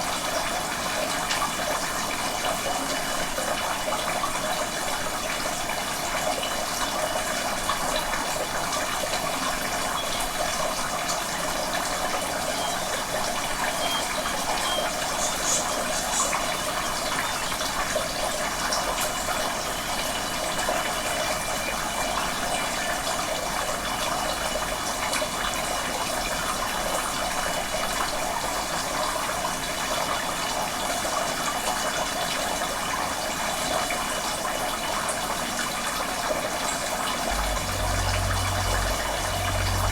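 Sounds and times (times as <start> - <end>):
rush of flowing water: 0.0 - 39.9
faint high tones: 37.2 - 39.9.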